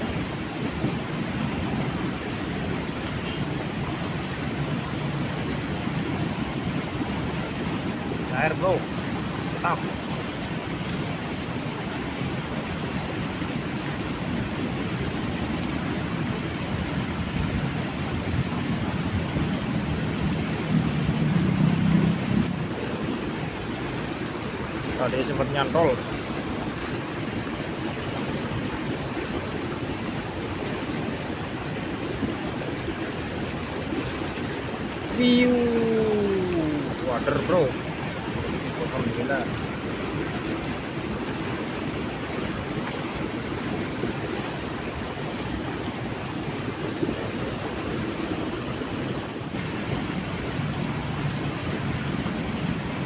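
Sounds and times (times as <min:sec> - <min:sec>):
water rushing through ditch: 0:00.0 - 0:53.0.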